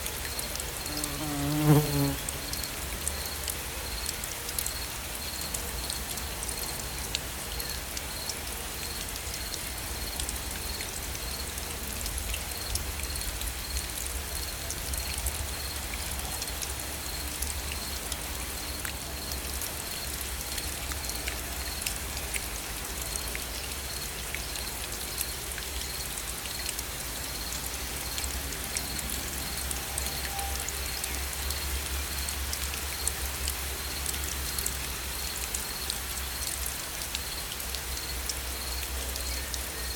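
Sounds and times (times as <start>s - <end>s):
gentle rain hissing: 0.0s - 39.9s.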